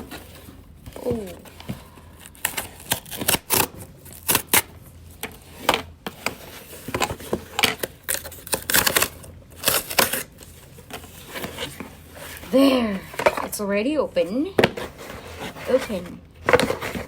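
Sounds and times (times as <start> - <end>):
cardboard ripping: 0.0 - 4.7, 5.4 - 12.6
cardboard box being opened: 14.6 - 17.0.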